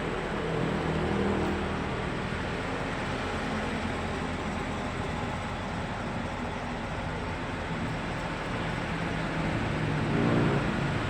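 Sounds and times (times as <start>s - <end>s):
bus engine idling hum: 0.0s - 11.0s.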